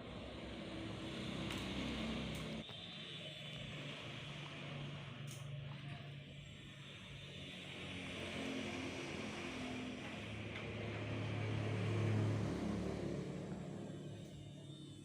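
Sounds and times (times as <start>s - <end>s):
vehicle engine passing by: 0.0s - 2.6s, 7.6s - 15.0s.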